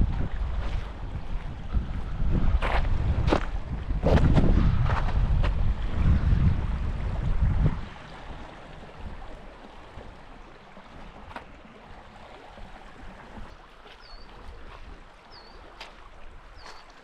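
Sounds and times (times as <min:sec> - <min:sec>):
stream flowing and rippling: 0:00.0 - 0:17.0
bird chirping: 0:14.0 - 0:14.4.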